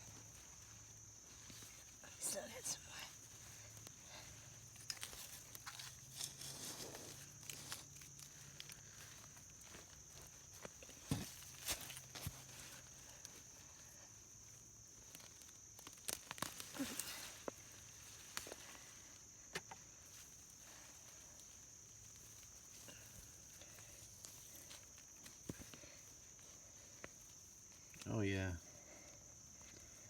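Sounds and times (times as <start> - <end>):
high insect trill: 0.0 - 30.0
digging scrapes in soil: 4.9 - 7.9.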